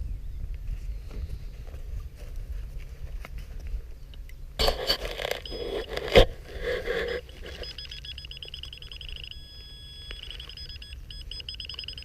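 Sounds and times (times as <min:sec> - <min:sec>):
digging and scraping in soil: 0:00.9 - 0:08.6
metal detector beeping: 0:04.6 - 0:12.0.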